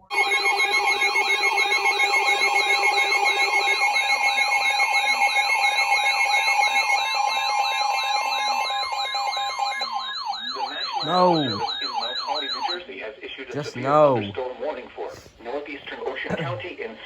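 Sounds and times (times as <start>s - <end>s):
siren-like electronic warble: 0.1s - 12.7s
steady electronic alert tones: 10.8s - 12.0s.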